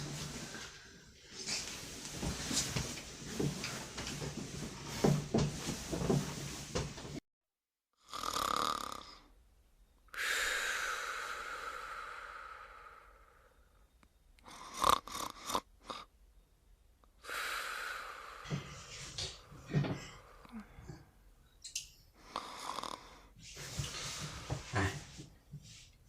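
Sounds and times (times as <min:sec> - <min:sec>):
woman snoring: 0:08.0 - 0:09.4, 0:10.1 - 0:13.5, 0:14.5 - 0:16.1, 0:17.2 - 0:19.0, 0:22.3 - 0:23.3.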